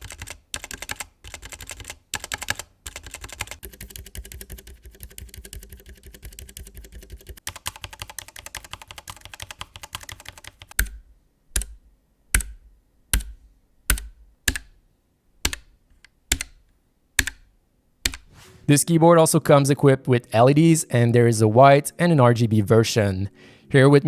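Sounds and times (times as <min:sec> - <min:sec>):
mechanical keyboard key clicks: 0:13.2 - 0:14.8.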